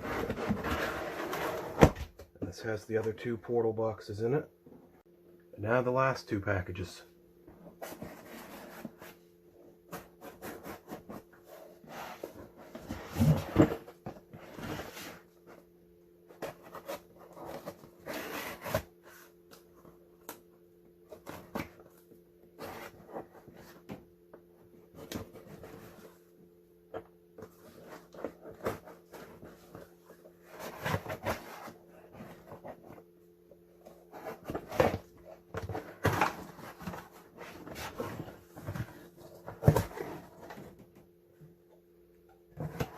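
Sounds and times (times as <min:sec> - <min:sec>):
packages rustling and scraping: 0:00.0 - 0:02.0, 0:07.5 - 0:15.7, 0:16.3 - 0:19.9, 0:21.1 - 0:24.0, 0:27.4 - 0:33.1, 0:33.7 - 0:41.0.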